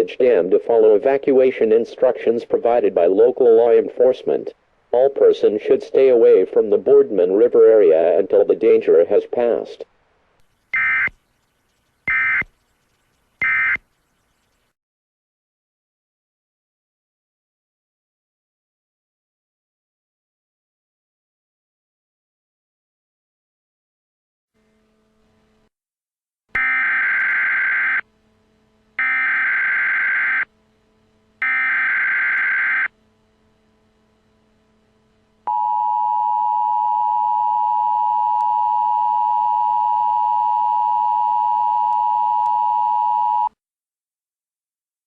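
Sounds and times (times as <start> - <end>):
digital data tone bursts: 10.7 - 14.7, 26.6 - 28.0, 31.4 - 32.9
two-tone attention signal: 10.8 - 11.1, 12.1 - 12.5, 13.4 - 13.8, 31.4 - 32.9, 35.5 - 43.5.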